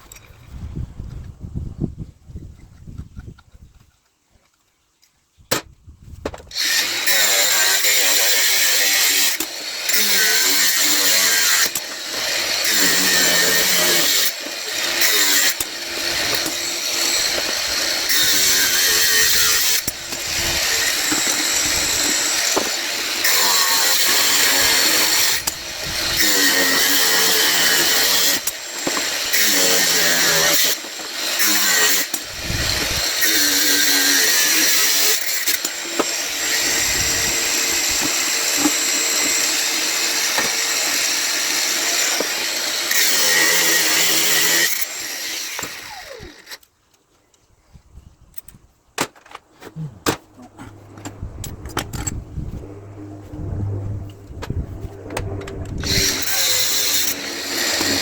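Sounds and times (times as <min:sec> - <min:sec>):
power tool cutting metal: 0:06.5 - 0:46.6, 0:55.0 - 0:58.0.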